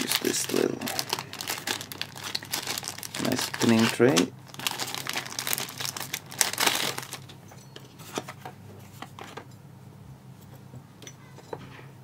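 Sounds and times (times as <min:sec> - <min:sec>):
rustling scrape: 0:07.8 - 0:09.4.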